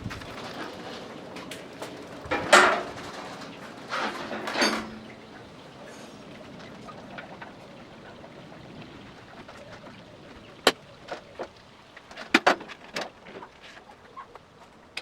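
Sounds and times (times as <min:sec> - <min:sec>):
clicks and knocks: 0:01.4 - 0:05.5
faint hiss: 0:02.4 - 0:14.6.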